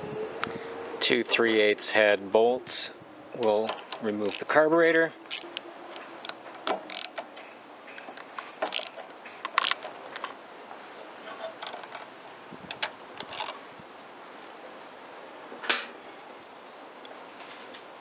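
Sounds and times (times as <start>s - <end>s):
metallic tool clicks: 3.7s - 5.6s, 6.2s - 7.2s.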